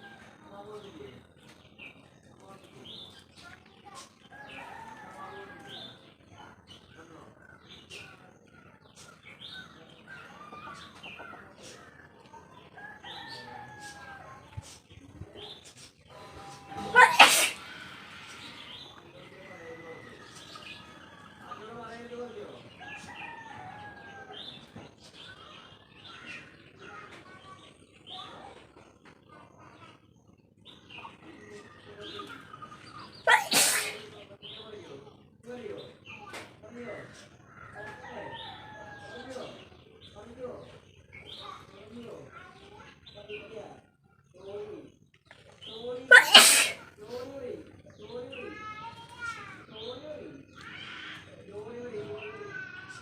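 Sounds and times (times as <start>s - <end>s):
person sneezing: 16.9s - 17.6s, 33.3s - 34.0s, 46.1s - 46.8s.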